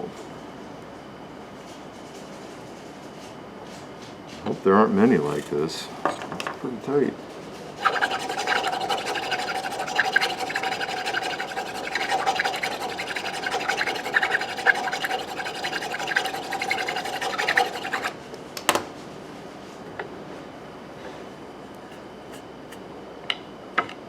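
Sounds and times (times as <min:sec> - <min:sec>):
file rasping in metal: 0:07.7 - 0:18.2.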